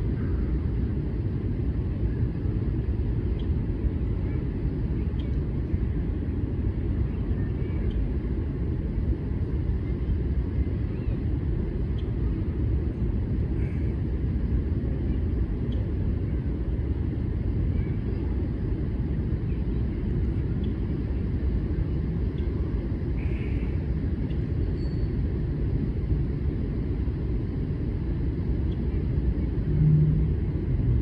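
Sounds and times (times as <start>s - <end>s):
steady low rumble: 0.0s - 31.0s
faint bird chirps: 23.2s - 25.2s.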